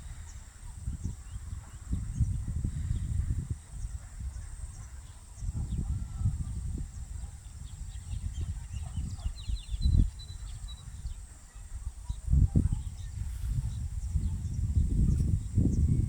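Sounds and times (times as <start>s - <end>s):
rumble and bumps on microphone: 12.3s - 16.0s.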